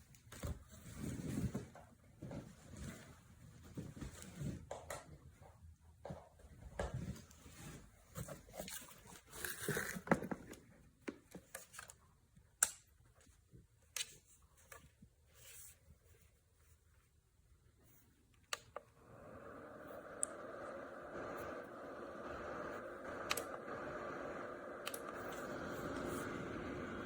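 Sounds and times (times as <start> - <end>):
rustling and crinkling: 0.0 - 5.4.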